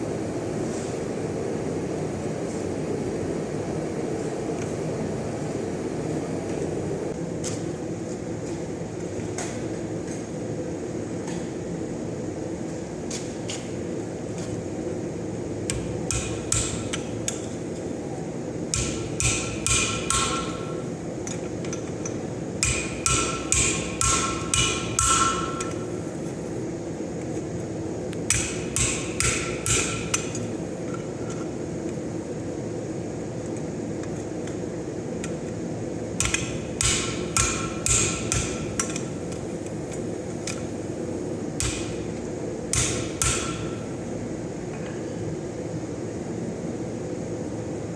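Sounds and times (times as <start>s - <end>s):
hammer striking steel on anvil: 15.7s - 17.1s, 18.7s - 20.8s, 22.6s - 25.9s, 28.3s - 30.5s, 36.2s - 39.1s, 41.6s - 42.1s, 42.7s - 44.0s.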